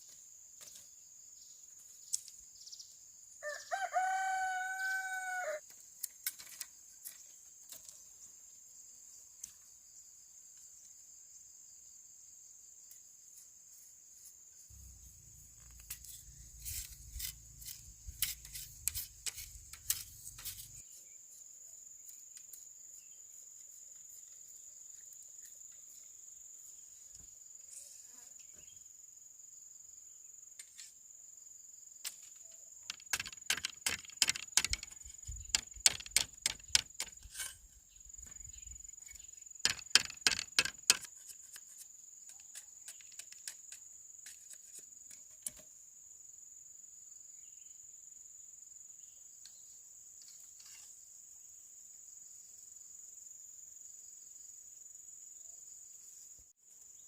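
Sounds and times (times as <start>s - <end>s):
crickets chirring: 0.0s - 57.0s
sharp clicks and light knocks: 32.9s - 37.4s, 39.6s - 41.7s.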